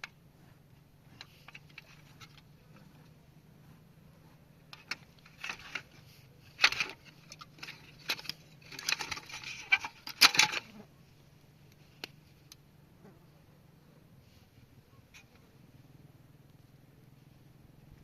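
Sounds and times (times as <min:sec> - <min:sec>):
small hard parts clicking and rattling: 0:01.1 - 0:03.1, 0:04.7 - 0:10.8.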